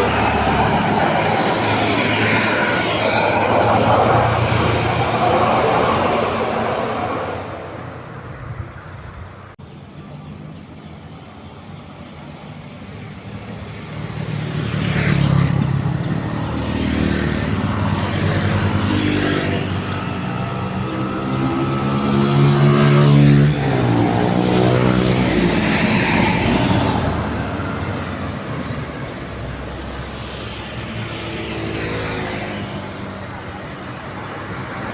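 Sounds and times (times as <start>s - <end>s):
bus engine revving: 0.0s - 8.2s, 15.0s - 31.2s.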